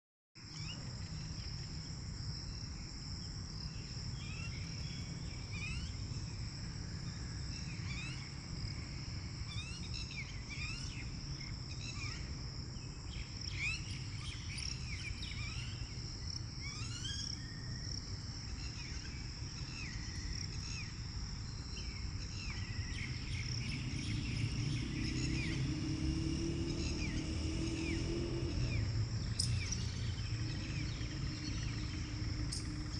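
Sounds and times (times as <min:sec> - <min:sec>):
bird chirps: 0:28.7 - 0:32.9.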